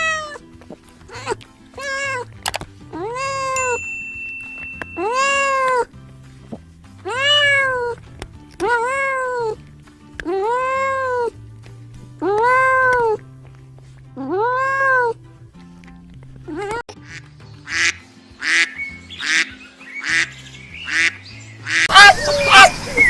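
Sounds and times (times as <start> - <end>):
background music with low notes: 0.0 - 22.5
cat meowing: 1.2 - 2.3, 7.0 - 8.0, 8.6 - 9.6
ducks quacking: 16.9 - 23.0.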